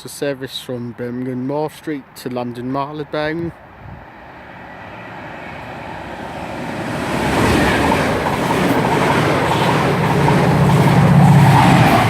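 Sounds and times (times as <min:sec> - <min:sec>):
diesel train approaching: 0:03.6 - 0:12.0.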